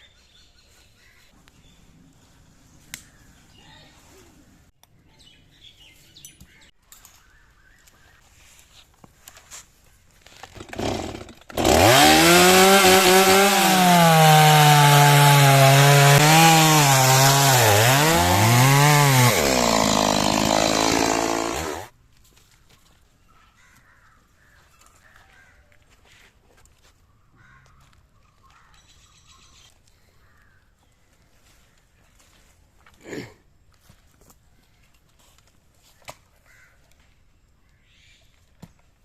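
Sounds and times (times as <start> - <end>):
chainsaw running at high revs: 10.6 - 21.9.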